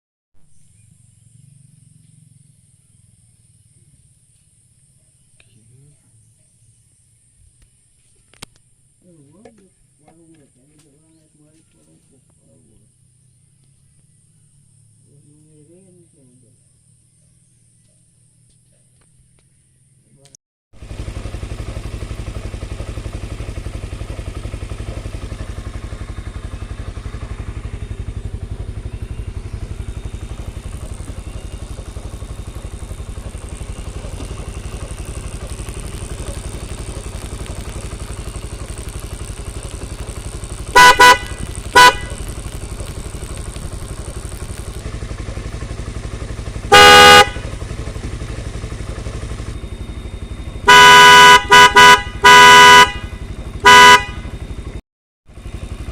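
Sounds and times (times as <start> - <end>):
motorcycle engine running: 0.4 - 20.2, 20.8 - 55.9
loud car horn blasts: 40.6 - 42.4, 46.6 - 47.8, 50.6 - 54.5.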